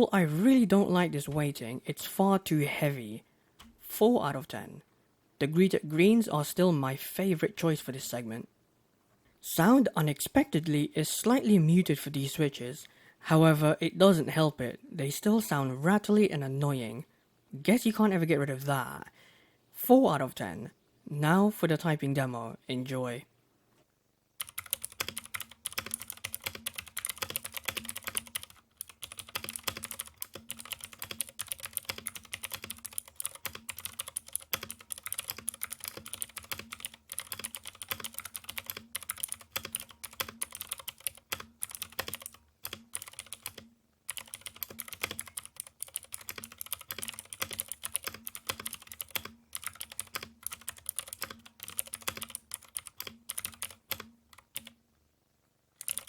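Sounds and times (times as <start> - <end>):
faint steady hum: 0.0 - 56.0
fast typing on mechanical keyboard: 24.4 - 54.7, 55.8 - 56.0.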